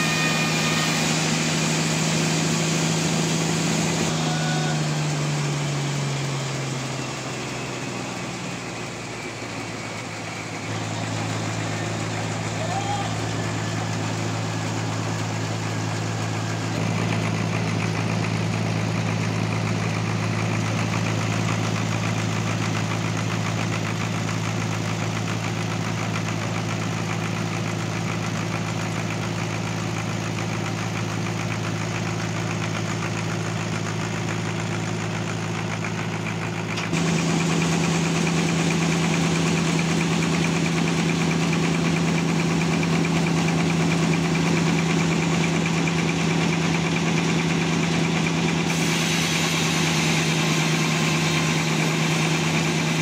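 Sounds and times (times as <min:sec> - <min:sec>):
sawmill engine humming: 0:00.0 - 0:53.0.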